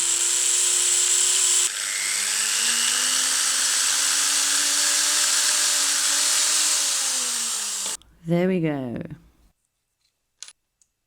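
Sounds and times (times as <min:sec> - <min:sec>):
electric drill drilling plastic: 0:00.0 - 0:08.0.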